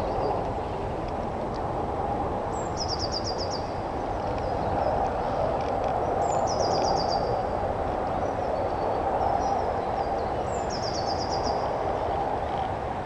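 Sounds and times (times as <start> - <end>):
distant traffic rumble: 0.0 - 13.0.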